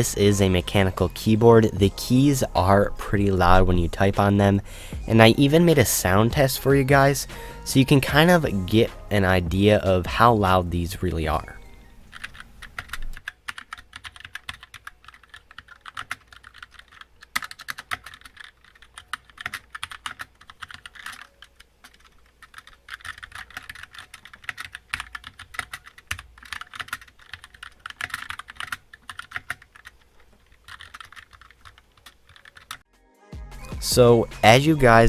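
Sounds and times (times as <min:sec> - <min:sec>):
fast typing on mechanical keyboard: 0:12.1 - 0:32.8.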